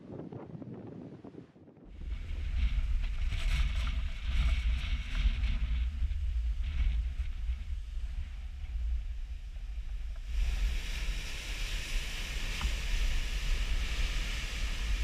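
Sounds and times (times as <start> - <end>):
wind buffeting microphone: 0.0 - 15.0
rough surf hissing: 9.5 - 15.0.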